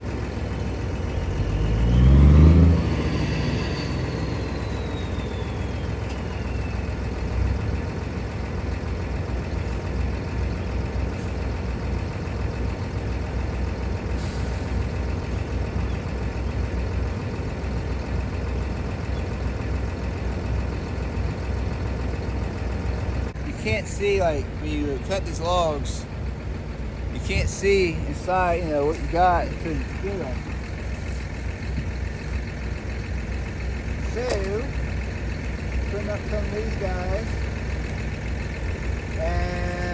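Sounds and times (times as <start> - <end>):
engine revving and rumbling: 0.0 - 39.9
high whine: 2.5 - 6.8.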